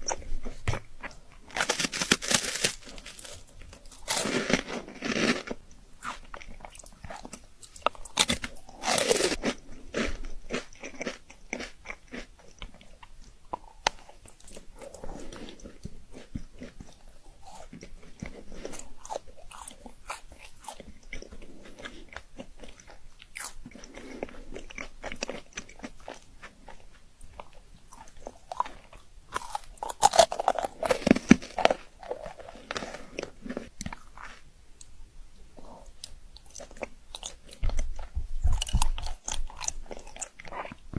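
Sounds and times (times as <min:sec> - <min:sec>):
crunching chocolate bites: 0:00.0 - 0:34.9, 0:35.6 - 0:40.9
soft chewing clicks: 0:05.7 - 0:40.9.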